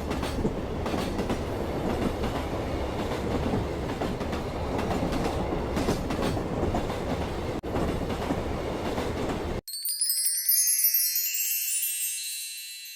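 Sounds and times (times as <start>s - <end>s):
train rumbling on rails: 0.0s - 9.6s
tinkling bell-like chime: 9.6s - 12.9s.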